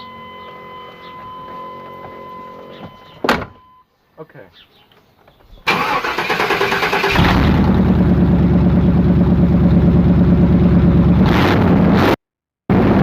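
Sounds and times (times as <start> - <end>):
starter cranking engine: 5.7 - 8.0
truck engine running loud: 7.0 - 12.1.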